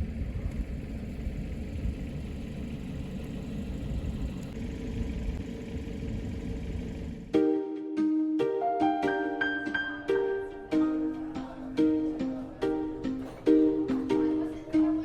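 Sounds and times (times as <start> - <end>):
music: 7.3 - 15.0.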